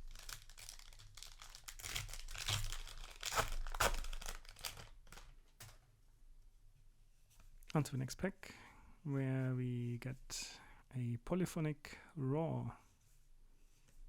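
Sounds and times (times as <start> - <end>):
foil wrapper crinkling and tearing: 0.0 - 5.8.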